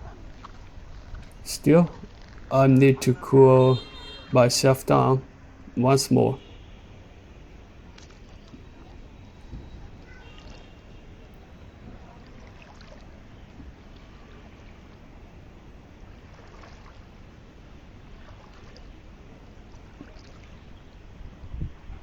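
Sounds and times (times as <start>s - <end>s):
shallow water sloshing and trickling: 0.0s - 2.5s, 3.8s - 4.4s, 5.3s - 22.0s
wind rumble on microphone: 0.0s - 2.5s, 20.6s - 22.0s
faint water splashes: 0.0s - 22.0s.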